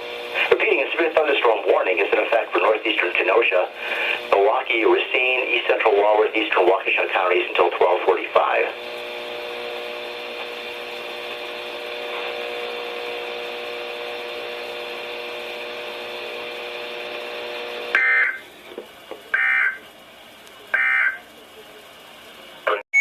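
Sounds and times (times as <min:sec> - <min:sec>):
steady electronic hum: 0:00.0 - 0:23.0
digital data bursts: 0:19.3 - 0:19.9, 0:20.7 - 0:21.3.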